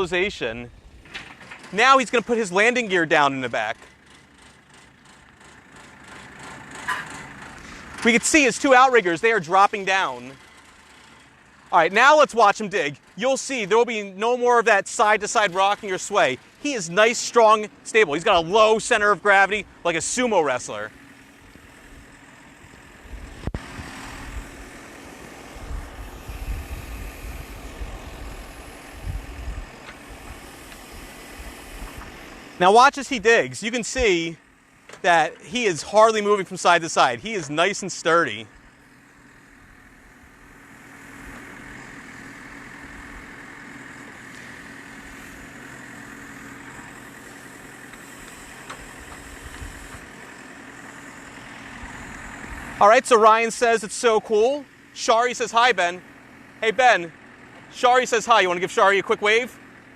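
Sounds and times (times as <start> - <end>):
backhoe engine rumble: 0.0 - 59.9
backhoe arm digging: 0.9 - 8.8.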